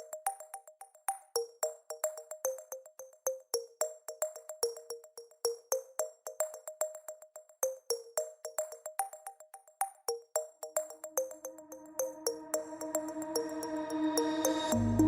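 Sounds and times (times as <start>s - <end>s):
plucked electronic music: 14.7s - 15.0s.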